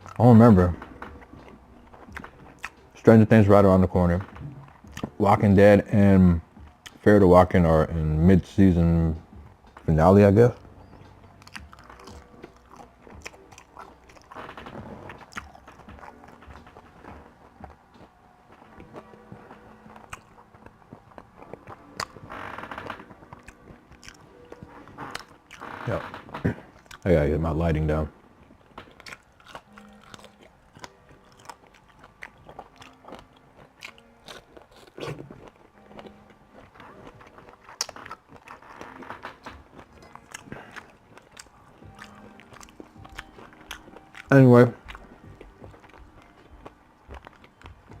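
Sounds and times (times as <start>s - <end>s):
person chewing and biting food: 1.0s - 2.9s, 11.3s - 25.8s, 26.5s - 27.1s, 28.8s - 48.0s
mouth smacks: 33.8s - 35.6s.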